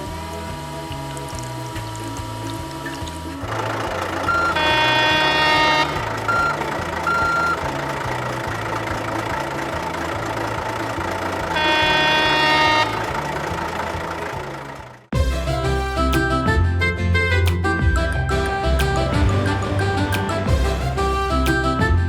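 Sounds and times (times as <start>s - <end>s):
low rumble: 0.0s - 22.0s
short high beeps: 4.3s - 7.6s.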